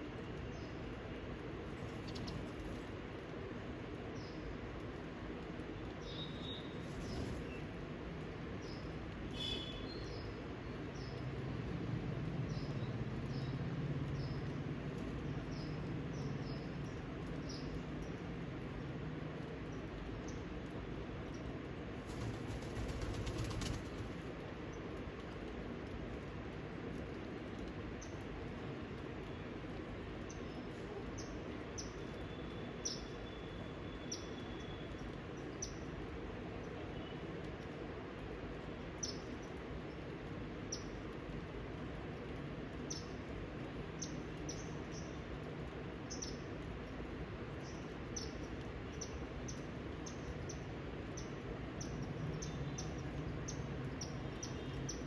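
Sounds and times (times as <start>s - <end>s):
low outdoor background noise: 0.0s - 55.0s
small bird chirping: 1.8s - 2.8s, 47.6s - 55.0s.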